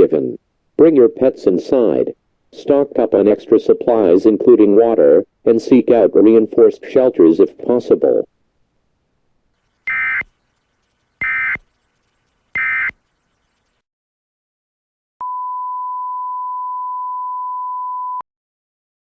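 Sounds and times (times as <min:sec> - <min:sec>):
harsh digital chirps: 0:09.6 - 0:13.8
steady single tone: 0:15.2 - 0:18.2.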